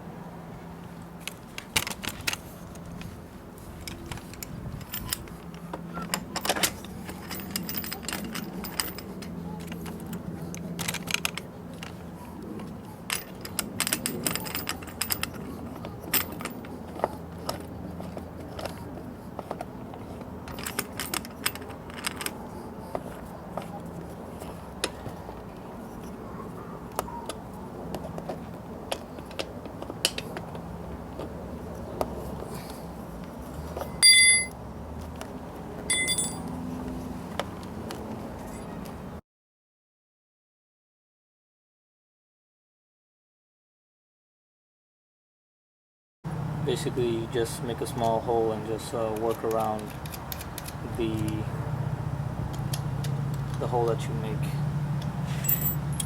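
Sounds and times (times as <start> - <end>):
metal tools clinking and rattling: 3.7 - 12.0, 12.6 - 18.8, 19.4 - 23.8, 33.8 - 34.6, 35.9 - 36.5, 55.3 - 56.0.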